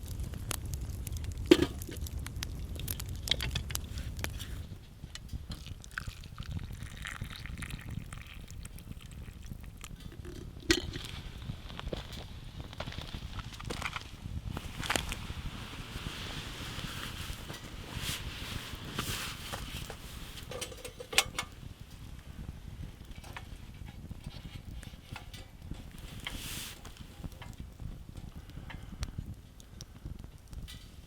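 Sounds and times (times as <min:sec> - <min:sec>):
loud snap of fire: 0:00.0 - 0:05.5, 0:09.8 - 0:20.5
wood fire crackling: 0:00.0 - 0:31.0.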